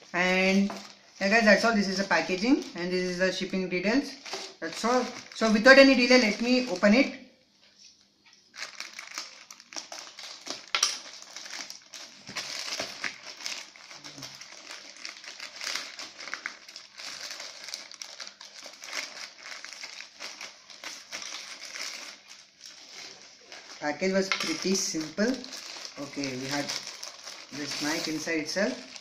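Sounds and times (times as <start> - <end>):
packaging crinkling and rustling: 0.0 - 29.0
packaging crack: 8.5 - 29.0.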